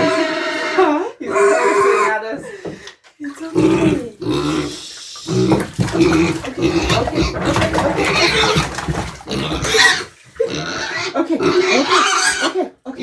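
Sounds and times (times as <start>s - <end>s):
pig squealing loudly: 0.0s - 2.3s, 3.6s - 12.6s.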